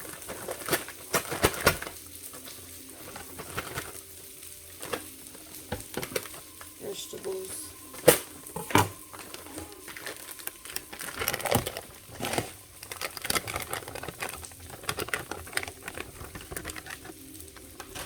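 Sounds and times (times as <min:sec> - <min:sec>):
clicking scraping and rustling: 0:08.0 - 0:18.0.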